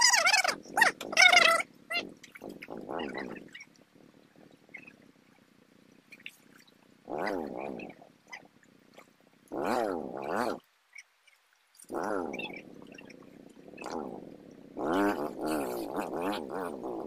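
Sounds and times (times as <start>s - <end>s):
motorcycle engine idling and revving: 14.8s - 17.0s.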